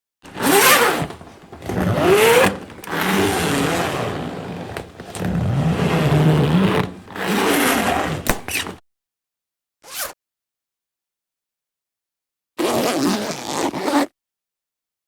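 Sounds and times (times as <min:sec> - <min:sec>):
zipper being zipped: 0:00.3 - 0:08.8, 0:09.8 - 0:10.2, 0:12.6 - 0:14.2.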